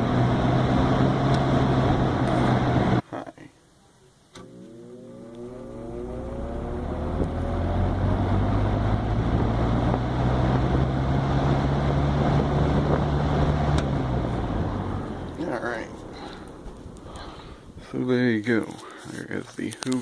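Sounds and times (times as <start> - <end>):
electric fan motor whine: 0.0 - 3.0, 4.4 - 16.7
fan air rushing: 4.4 - 18.0.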